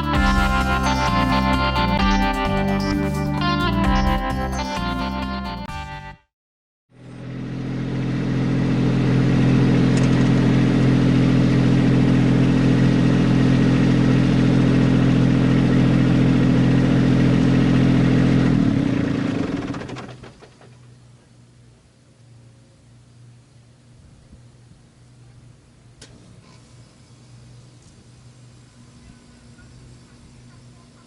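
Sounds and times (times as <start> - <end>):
tractor diesel engine running: 7.0 - 21.2.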